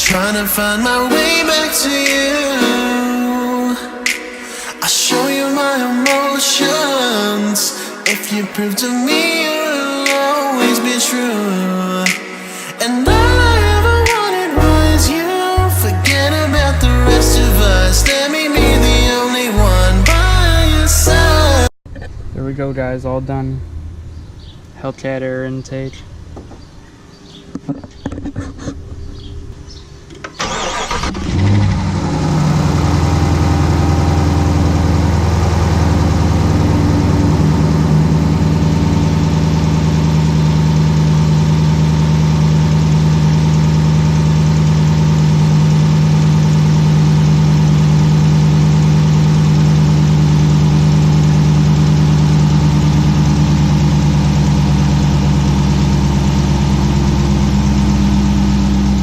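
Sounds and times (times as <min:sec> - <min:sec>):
car engine starting and idling: 0:00.0 - 0:04.8, 0:13.1 - 0:24.8, 0:29.1 - 0:59.0
sharp clicks: 0:04.1 - 0:04.6, 0:12.1 - 0:12.5.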